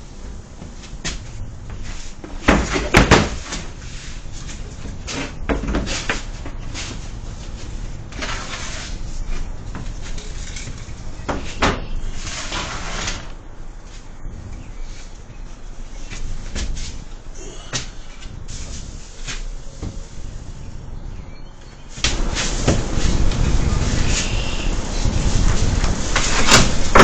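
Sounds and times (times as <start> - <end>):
scraping or rustling noise: 0.0 - 15.2, 16.0 - 17.1, 18.4 - 20.6, 21.9 - 27.0
sharp knocks and bangs: 22.0 - 24.8.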